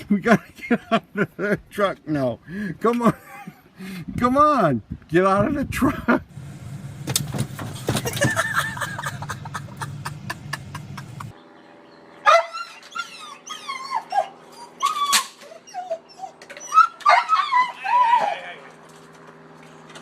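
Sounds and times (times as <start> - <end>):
low steady hum: 5.8 - 12.1
dog whining and yipping: 12.2 - 18.6.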